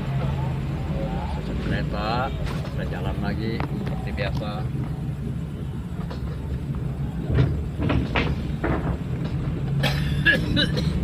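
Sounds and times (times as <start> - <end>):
minibus engine running: 0.0 - 11.0
short knocks and rattles: 7.2 - 9.8.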